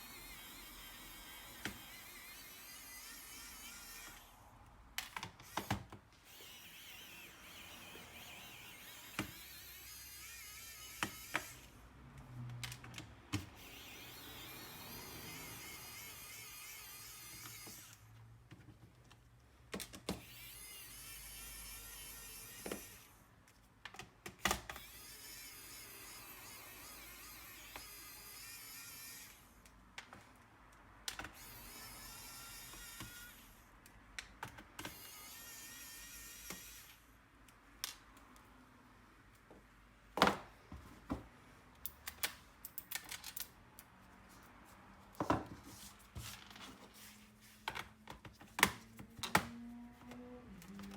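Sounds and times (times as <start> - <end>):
electric screwdriver whirring: 5.4 - 5.9
clicks and knocks of screws: 41.8 - 43.9.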